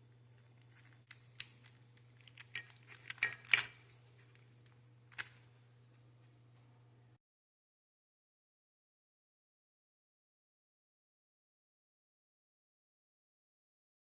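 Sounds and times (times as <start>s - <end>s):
faint steady hum: 0.0s - 7.2s
clicks and clinks of handling: 0.4s - 5.4s.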